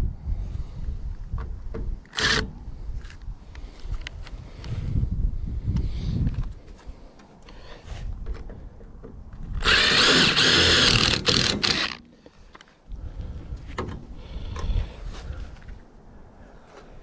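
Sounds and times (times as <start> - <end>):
power drill drilling rivets: 2.1 - 2.5, 9.6 - 12.1.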